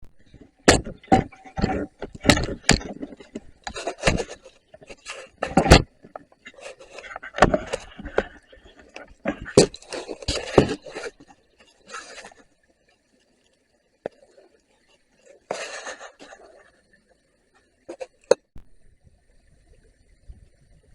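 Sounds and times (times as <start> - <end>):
scraping: 0.2 - 12.4.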